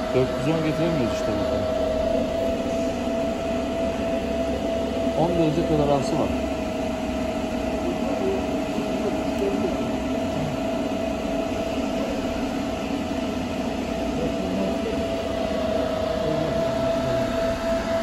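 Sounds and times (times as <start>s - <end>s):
cooling fan whirr: 0.0s - 18.0s
machine whine: 0.0s - 18.0s.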